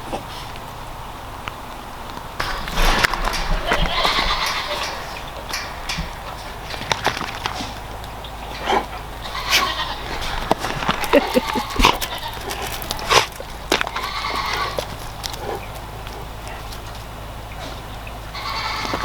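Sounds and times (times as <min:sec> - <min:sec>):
goats bleating: 0:02.4 - 0:16.8, 0:18.3 - 0:19.0.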